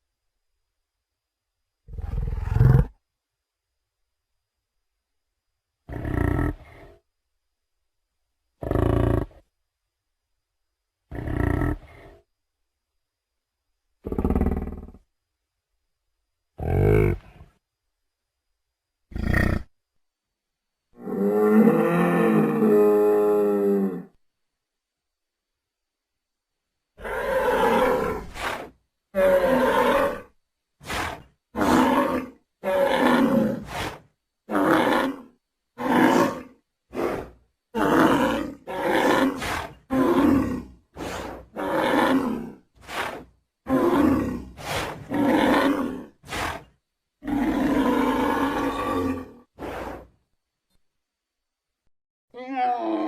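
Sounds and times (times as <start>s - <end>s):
creature growls grunts and roars: 30.8s - 50.1s.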